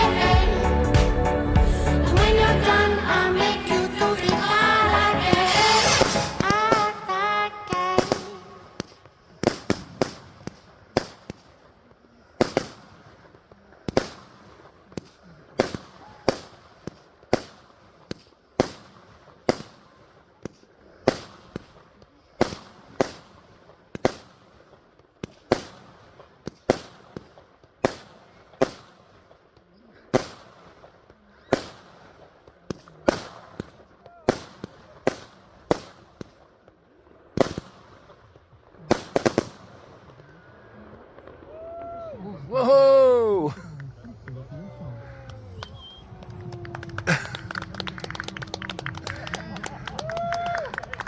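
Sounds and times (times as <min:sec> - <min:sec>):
fireworks bangs with echo: 0:03.4 - 0:42.0.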